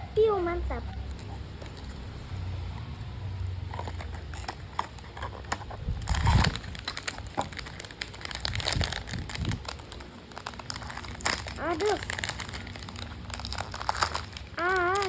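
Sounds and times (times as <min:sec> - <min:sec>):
packaging crinkling: 0:03.4 - 0:15.0.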